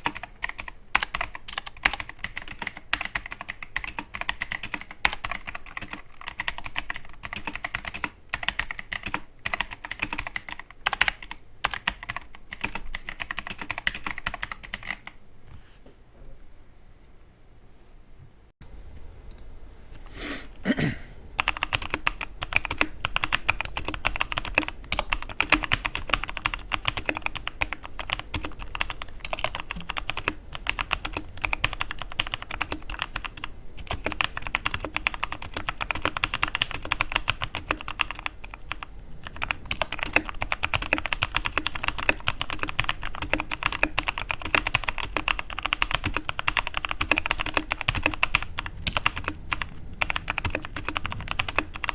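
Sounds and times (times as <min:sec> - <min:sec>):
mechanical keyboard typing: 0:00.0 - 0:15.2, 0:21.4 - 0:51.9.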